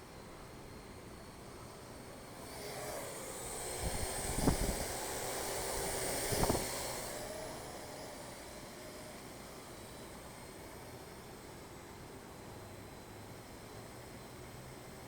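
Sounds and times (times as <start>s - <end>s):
drone rotors whirring: 2.6s - 8.5s.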